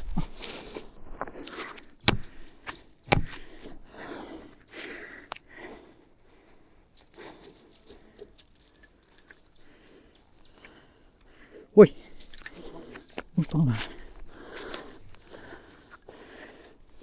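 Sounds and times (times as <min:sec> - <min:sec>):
sharp knocks: 0:02.1 - 0:02.4, 0:03.1 - 0:03.5
small metal pieces jingling: 0:06.9 - 0:10.8, 0:12.0 - 0:17.0.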